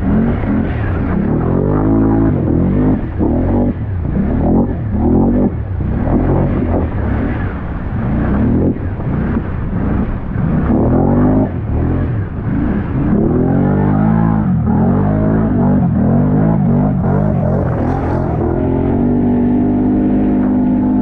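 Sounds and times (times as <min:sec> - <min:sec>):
atv engine revving: 0:00.0 - 0:21.0.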